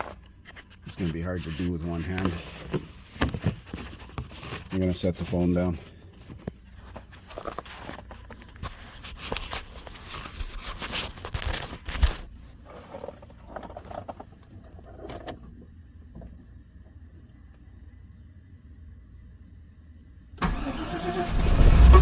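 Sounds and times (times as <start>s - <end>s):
phone handling rustling and scraping: 0.0s - 15.4s.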